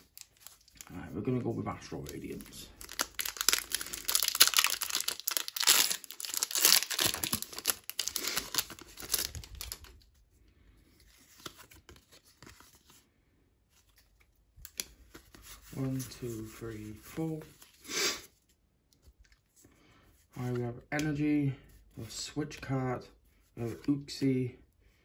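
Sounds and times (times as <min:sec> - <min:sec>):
foil wrapper tearing and crinkling: 0:02.2 - 0:10.0.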